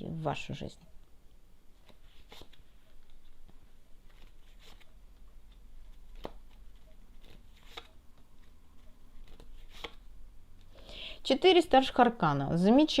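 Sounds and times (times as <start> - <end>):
cards slapping on table: 6.2 - 6.6.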